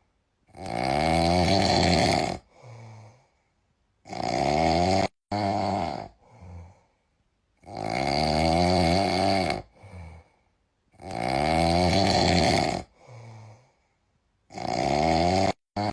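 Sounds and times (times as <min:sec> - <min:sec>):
capybara snoring: 0:00.5 - 0:03.2, 0:04.0 - 0:06.8, 0:07.6 - 0:10.3, 0:11.0 - 0:13.5, 0:14.5 - 0:15.9.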